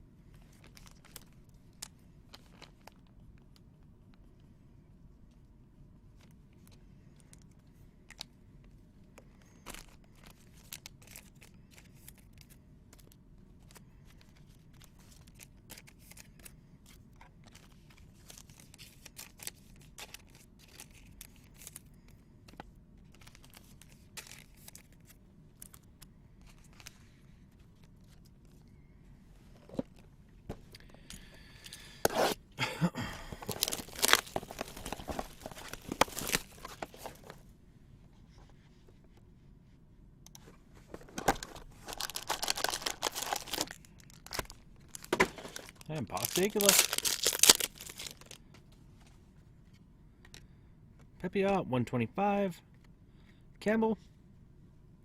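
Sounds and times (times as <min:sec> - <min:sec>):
cards and foil wrappers handled: 0:00.4 - 0:03.1, 0:09.2 - 0:28.7, 0:30.7 - 0:37.4, 0:40.9 - 0:49.0.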